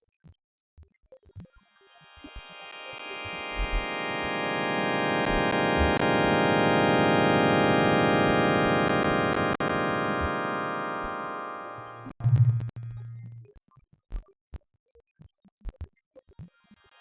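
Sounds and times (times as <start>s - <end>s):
sustained electronic chord: 1.9s - 13.1s
low thumps and clicks: 12.1s - 13.4s.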